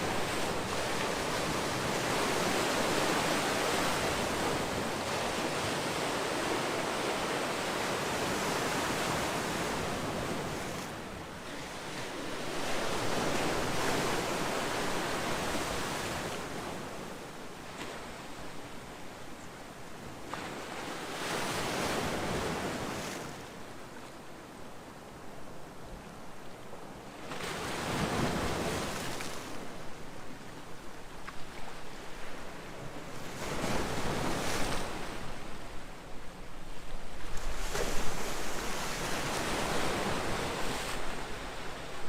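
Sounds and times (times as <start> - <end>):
ocean waves washing on shore: 0.0 - 18.7, 27.2 - 42.0.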